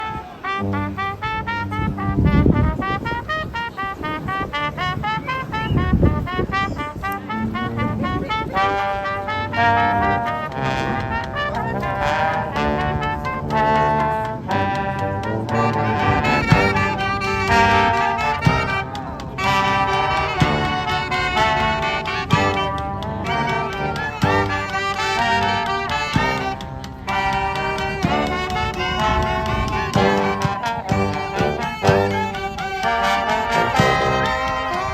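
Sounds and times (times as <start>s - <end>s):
brass band playing: 0.0s - 34.9s
steady drum beat: 5.8s - 34.9s.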